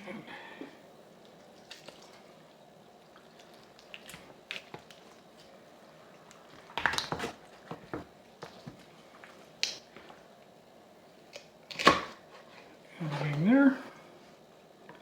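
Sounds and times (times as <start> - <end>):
wet squishing of raw chicken: 1.2 - 7.6.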